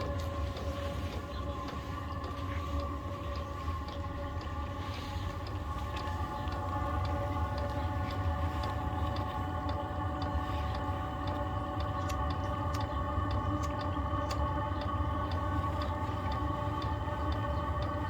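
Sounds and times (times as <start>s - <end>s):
fuel pump ticking: 0.0s - 18.0s
heater fan whine: 0.0s - 18.0s.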